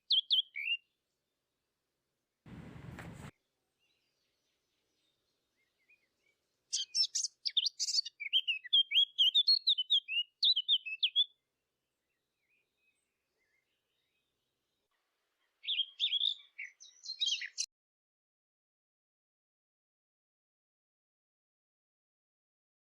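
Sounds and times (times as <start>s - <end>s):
songbird chirping and trilling: 0.0s - 1.3s, 2.6s - 17.7s
short burst of noise: 2.5s - 3.3s.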